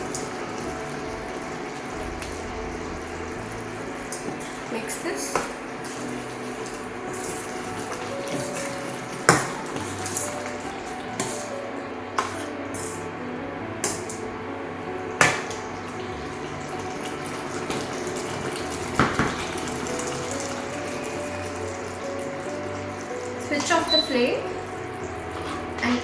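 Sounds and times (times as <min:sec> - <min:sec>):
wet mushy stirring: 0:00.0 - 0:13.1.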